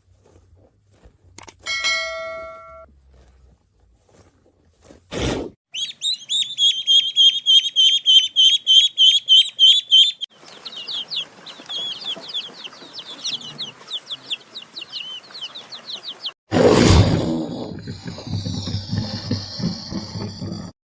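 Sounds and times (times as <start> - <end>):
bird chirping: 5.7 - 16.4.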